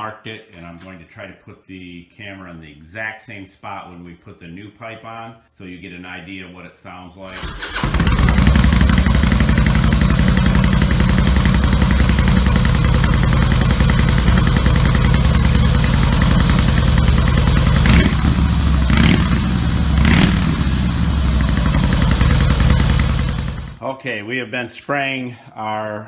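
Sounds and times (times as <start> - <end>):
motorcycle engine idling: 7.3 - 23.8
motorcycle throttle blips: 7.5 - 23.8.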